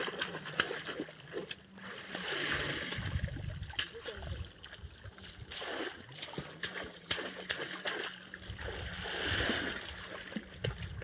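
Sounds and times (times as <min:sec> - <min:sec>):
river water splashing: 0:00.0 - 0:11.0
rushing swell of water: 0:08.5 - 0:10.4.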